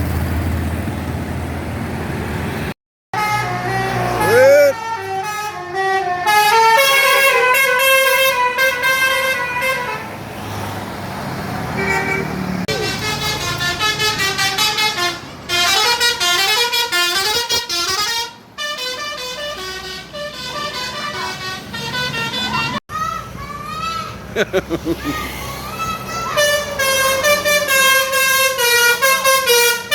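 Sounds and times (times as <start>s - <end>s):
bus horn playing a tune: 3.2s - 10.2s, 11.8s - 22.8s, 26.2s - 29.9s.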